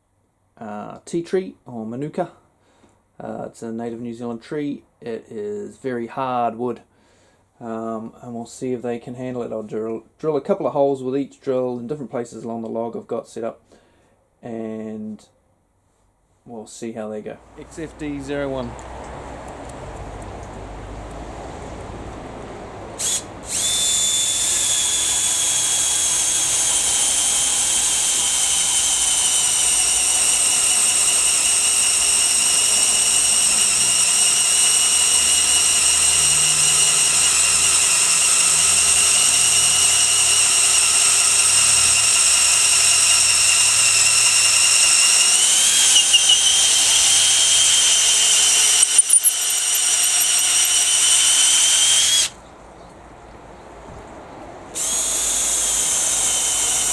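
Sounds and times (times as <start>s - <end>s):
cordless drill motor whine: 23.0s - 52.4s, 54.8s - 56.9s.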